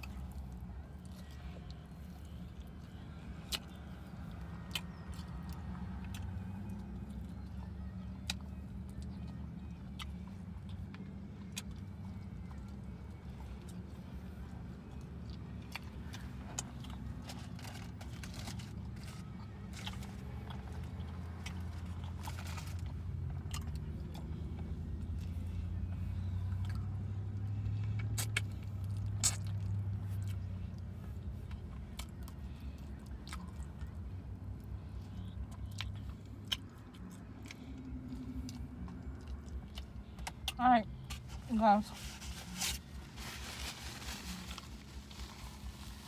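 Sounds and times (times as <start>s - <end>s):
person chewing food: 0.0s - 7.4s, 14.6s - 18.5s, 19.3s - 41.3s
low car interior hum: 0.0s - 46.0s.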